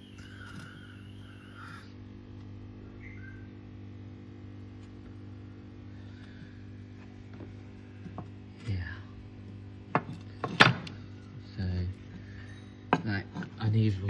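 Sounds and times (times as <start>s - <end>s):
faint high chirps: 0.0s - 1.9s, 3.0s - 3.5s
low mechanical hum: 0.0s - 14.0s.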